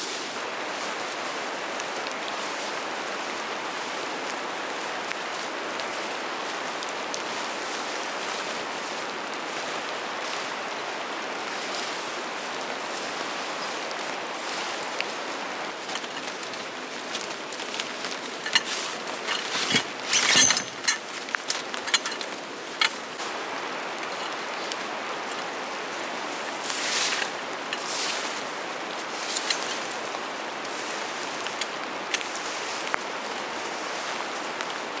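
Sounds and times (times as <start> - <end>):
sharp clicks and knocks: 18.4 - 23.0.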